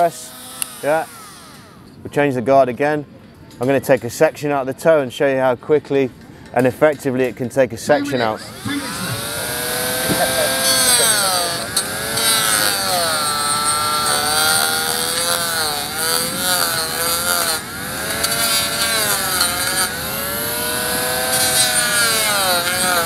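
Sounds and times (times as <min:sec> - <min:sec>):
grinder motor whine: 0:00.0 - 0:02.0, 0:07.9 - 0:23.0
gritty grinding hiss: 0:08.3 - 0:23.0.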